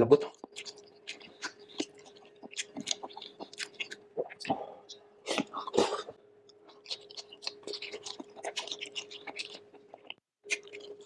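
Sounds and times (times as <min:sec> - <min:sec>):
faint hum: 0:00.0 - 0:11.0
chewing and lip-smacking: 0:00.2 - 0:11.0.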